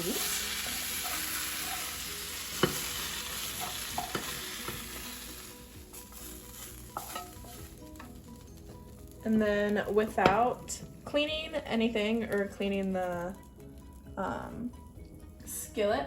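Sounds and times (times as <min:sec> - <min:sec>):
vegetables sizzling in a skillet: 0:00.0 - 0:14.8
utensil knocking on pan: 0:02.6 - 0:02.9, 0:10.2 - 0:10.5.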